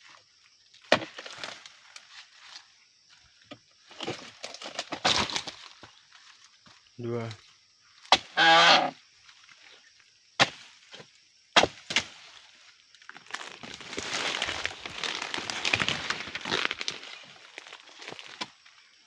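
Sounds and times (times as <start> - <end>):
crackling and rustling fronds: 0.0 - 19.0
chopping strikes on palm: 10.4 - 10.7, 11.6 - 12.1.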